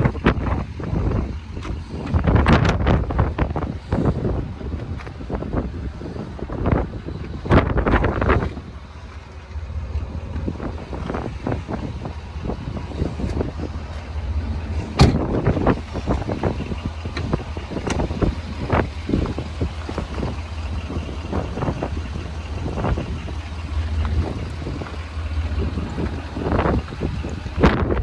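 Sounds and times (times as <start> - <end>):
diesel engine idling: 0.0 - 28.0
wind buffeting microphone: 0.0 - 28.0.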